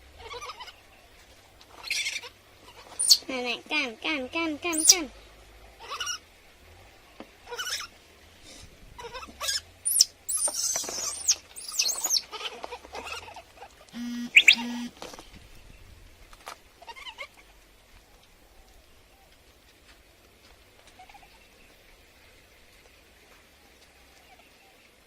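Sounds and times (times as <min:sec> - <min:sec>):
animal squeaks and chirps: 0:01.8 - 0:03.3, 0:04.7 - 0:05.0, 0:07.5 - 0:07.9, 0:09.0 - 0:12.4, 0:14.1 - 0:14.9
short flat beep tones: 0:14.0 - 0:14.9.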